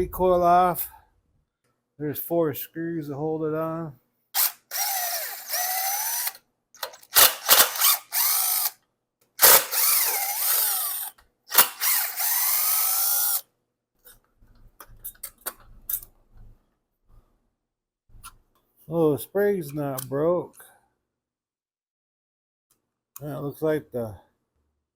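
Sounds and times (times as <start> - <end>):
drill motor whining: 4.4 - 8.8, 9.4 - 13.4.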